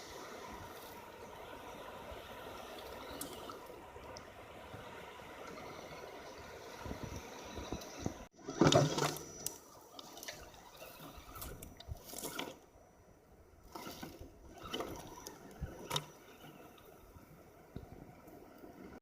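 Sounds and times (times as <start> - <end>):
water splashing: 0.0 - 12.7.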